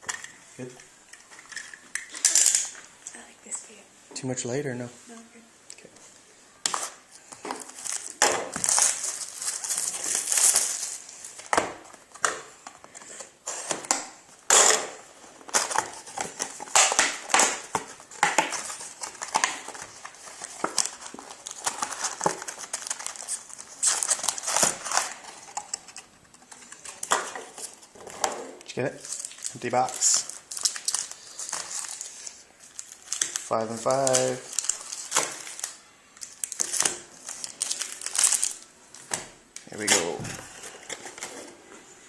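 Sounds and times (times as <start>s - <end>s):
plastic wrap crinkling: 6.8s - 41.5s
cardboard rustling: 15.1s - 28.2s.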